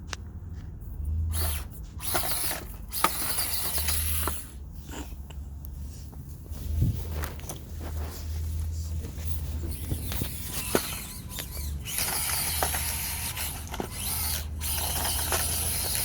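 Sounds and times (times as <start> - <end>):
small electric motor whirring: 1.3 - 4.6, 9.3 - 16.0.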